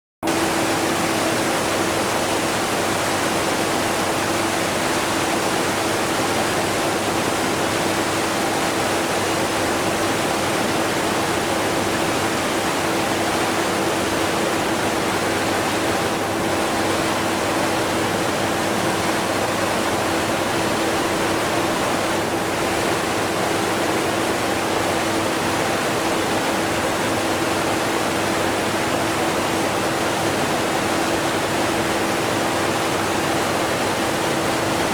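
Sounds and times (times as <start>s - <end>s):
vacuum cleaner hum: 0.2s - 12.4s
waterfall rushing: 0.2s - 34.9s.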